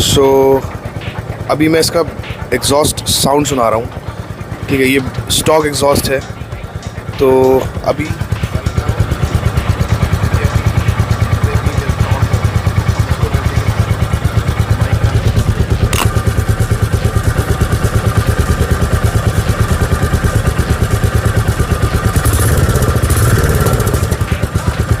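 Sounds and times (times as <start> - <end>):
motorcycle engine idling: 0.0 - 25.0
sharp click: 15.8 - 16.2.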